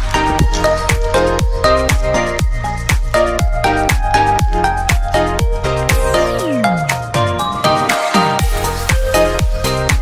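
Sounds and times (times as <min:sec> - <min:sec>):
electronic dance music: 0:05.9 - 0:08.5.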